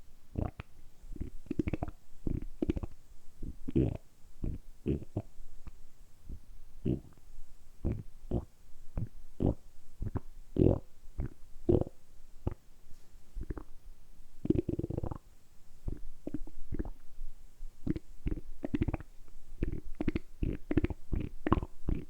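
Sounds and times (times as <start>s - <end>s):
stomach gurgling and rumbling: 15.9s - 17.0s, 17.8s - 22.0s.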